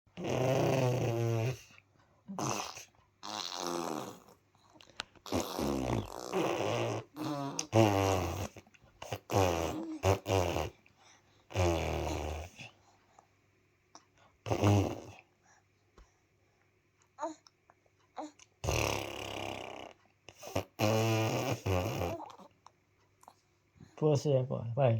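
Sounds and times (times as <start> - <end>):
man making buzzing snort noises: 0.2 - 1.7, 2.4 - 4.3, 5.2 - 10.8, 11.5 - 12.6, 14.5 - 15.2, 18.6 - 22.3.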